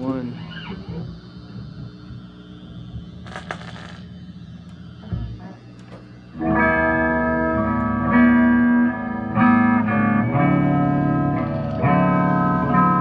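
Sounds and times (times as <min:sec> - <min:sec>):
low steady hum: 0:00.0 - 0:13.0
guitar chords ringing: 0:06.3 - 0:13.0.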